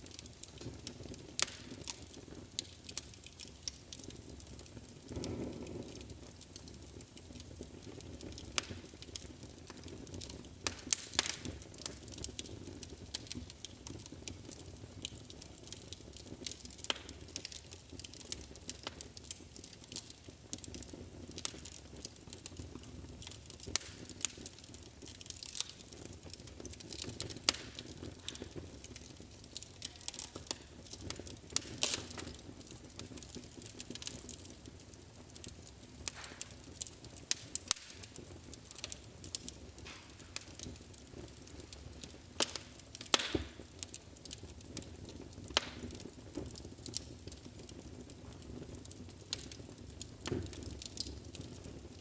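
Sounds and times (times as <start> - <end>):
wood fire crackling and popping: 0.0 - 52.0
low rush of flame: 0.1 - 14.3.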